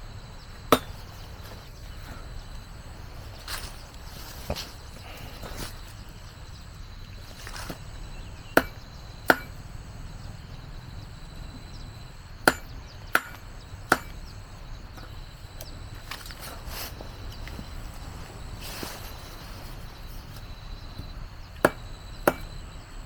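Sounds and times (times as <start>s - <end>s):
blade chopping grass: 0.7s - 1.7s, 8.6s - 9.6s, 12.5s - 14.3s, 21.0s - 22.6s.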